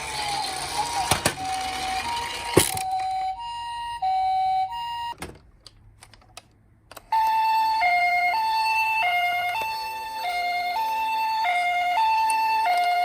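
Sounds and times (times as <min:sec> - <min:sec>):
toy two-tone siren: 0:00.0 - 0:05.2, 0:07.1 - 0:13.0.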